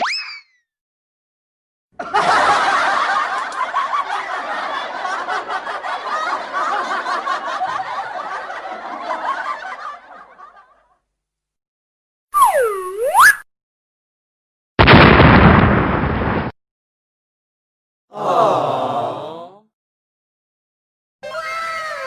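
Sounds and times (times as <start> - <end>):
crowd laughing: 2.0 - 11.0
sliding whistle-like tone: 12.4 - 13.5.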